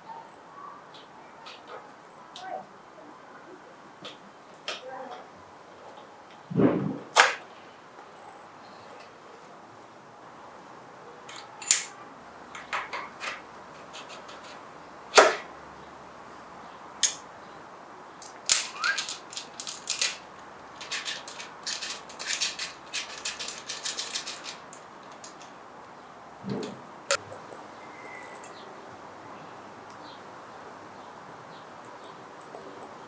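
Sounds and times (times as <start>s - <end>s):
tools and parts clicking: 11.3s - 12.0s, 18.2s - 25.5s.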